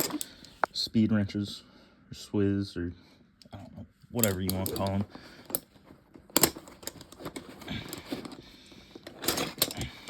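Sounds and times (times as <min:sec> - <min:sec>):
hand tools clinking: 0:00.0 - 0:00.5, 0:04.2 - 0:05.7, 0:09.0 - 0:10.0.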